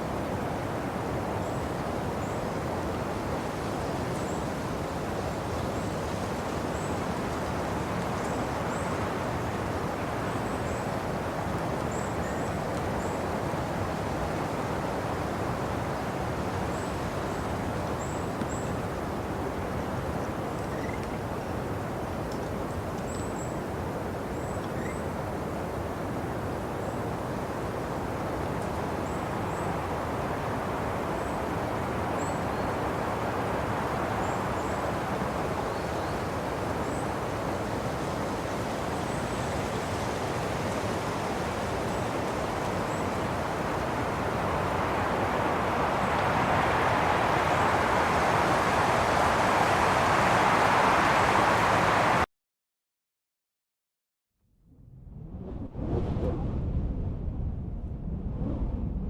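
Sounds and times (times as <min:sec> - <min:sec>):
wind blowing: 0:29.3 - 0:52.2, 0:54.7 - 0:59.0.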